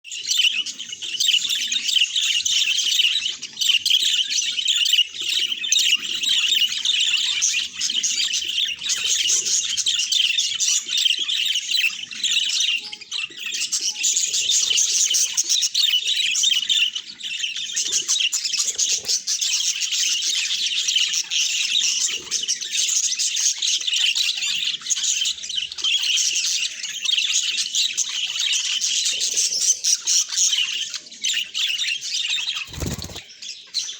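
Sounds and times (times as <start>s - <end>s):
budgerigars chattering: 0.2s - 33.9s.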